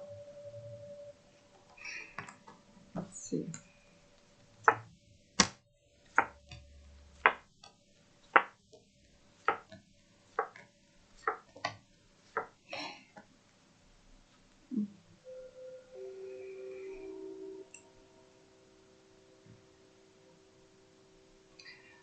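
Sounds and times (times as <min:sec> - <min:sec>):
sharp knocks: 0:08.4 - 0:08.6.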